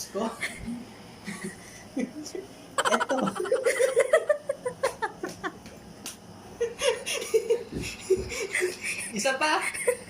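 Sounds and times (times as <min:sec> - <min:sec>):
person giggling: 0:02.8 - 0:05.6.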